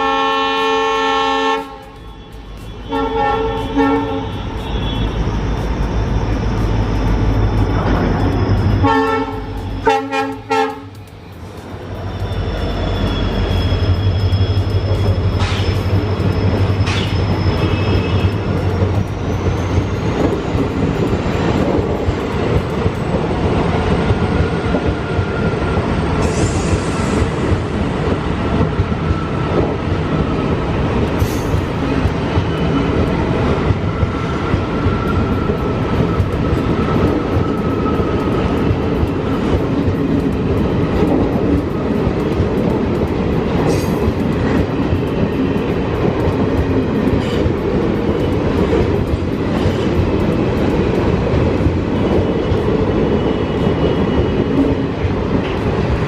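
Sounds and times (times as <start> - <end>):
train rolling roar: 0.0 - 56.0
high wheel squeal: 2.0 - 9.8, 11.2 - 21.6.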